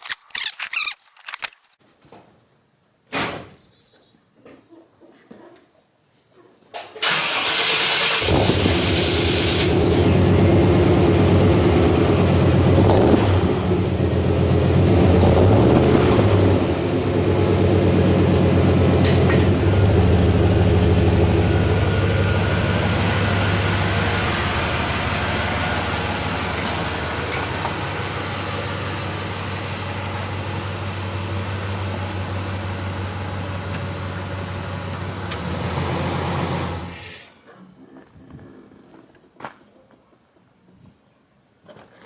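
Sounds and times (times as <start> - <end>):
engine starter cranking: 6.8 - 12.0, 18.6 - 32.7
engine running: 7.0 - 37.1.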